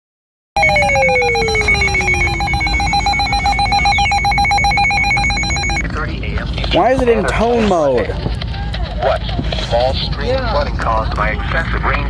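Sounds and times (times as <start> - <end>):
pulsed alarm beep: 0.6 - 5.8.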